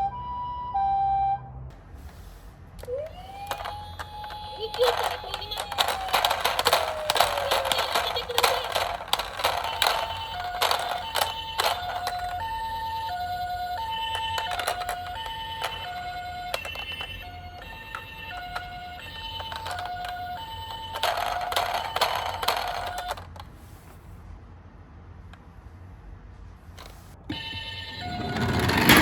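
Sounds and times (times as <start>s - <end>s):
toy siren two-tone hi-lo: 0.0s - 1.5s, 2.8s - 23.2s, 27.3s - 29.0s
rattling clatter: 4.7s - 12.3s, 27.3s - 29.0s.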